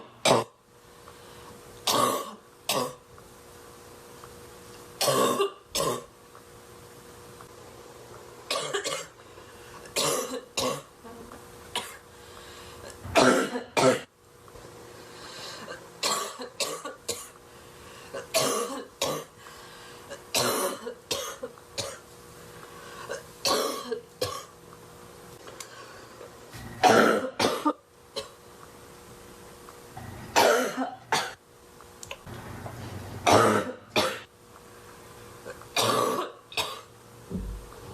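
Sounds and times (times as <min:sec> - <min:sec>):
woman coughing: 0:01.9 - 0:03.0, 0:05.0 - 0:06.1, 0:08.5 - 0:09.1, 0:10.0 - 0:10.9, 0:11.8 - 0:12.0, 0:13.2 - 0:14.1, 0:15.7 - 0:17.3, 0:18.2 - 0:19.3, 0:20.1 - 0:22.0, 0:23.1 - 0:24.5, 0:26.8 - 0:28.4, 0:30.4 - 0:31.4, 0:33.3 - 0:34.3, 0:35.8 - 0:36.9.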